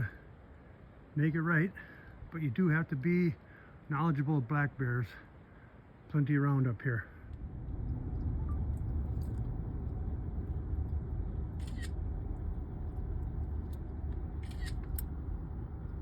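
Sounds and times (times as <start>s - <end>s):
car driving rumble: 7.2s - 16.0s.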